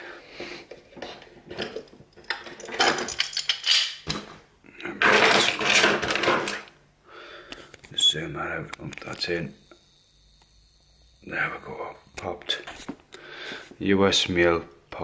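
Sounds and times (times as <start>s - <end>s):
scraping and handling noise: 0.3s - 6.8s, 8.7s - 14.4s
metal clinks of padlock and tools: 1.7s - 4.0s.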